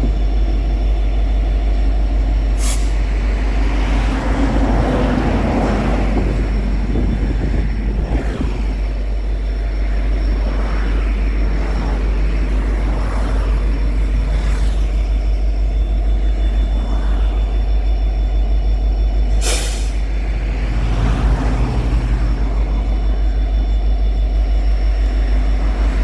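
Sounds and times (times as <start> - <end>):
diesel locomotive engine rumbling: 0.0 - 26.0
air hiss burst: 2.6 - 3.0, 19.3 - 20.0.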